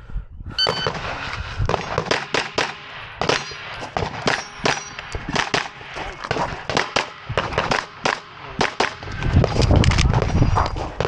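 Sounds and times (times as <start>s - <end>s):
bullets ringing on steel targets: 0.6s - 1.0s, 1.6s - 5.8s
shot timer beep: 0.6s - 1.0s
pistol shots: 0.8s - 9.0s.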